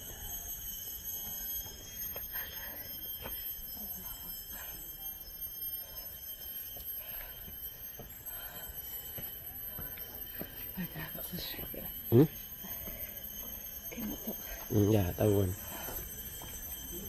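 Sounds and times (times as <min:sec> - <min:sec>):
insects droning: 0:00.0 - 0:17.0
footsteps on trail: 0:06.7 - 0:11.0, 0:15.5 - 0:17.0.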